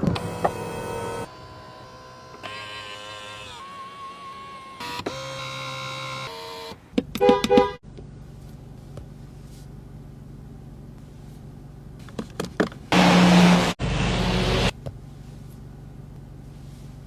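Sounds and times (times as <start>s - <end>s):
low steady hum: 7.8s - 12.9s, 14.7s - 17.0s.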